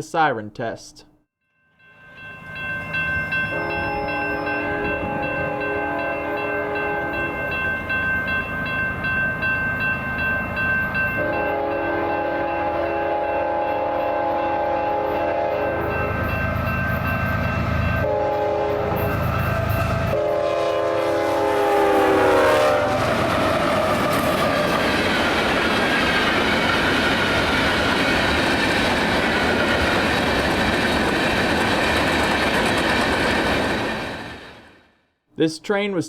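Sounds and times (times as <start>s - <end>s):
freight train cars rolling past: 2.0s - 34.9s
locomotive horn blasts: 3.5s - 7.4s, 11.2s - 16.1s, 18.0s - 23.2s.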